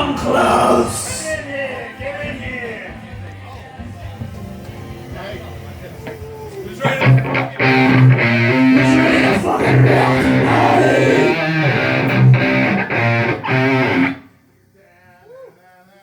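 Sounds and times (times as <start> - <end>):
rock band playing: 7.0 - 14.2.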